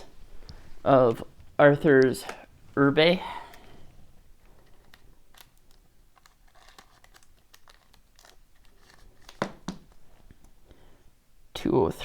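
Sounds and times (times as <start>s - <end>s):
cards clicking and rustling: 4.4s - 10.6s.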